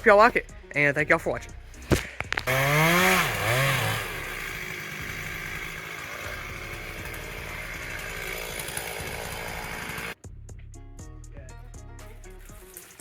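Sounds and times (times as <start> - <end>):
small engine revving and idling: 2.3 - 10.2.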